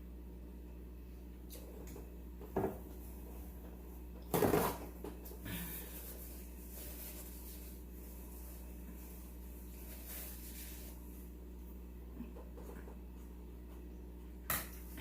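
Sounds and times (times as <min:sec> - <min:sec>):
steady low hum: 0:00.0 - 0:15.0
dishes knocking and rustling: 0:02.5 - 0:02.9.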